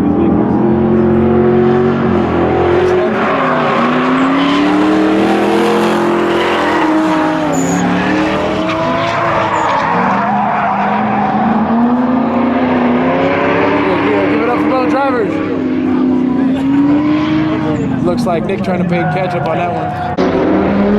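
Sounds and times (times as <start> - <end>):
car engines revving: 0.0 - 20.9
tyres squealing: 3.1 - 11.8.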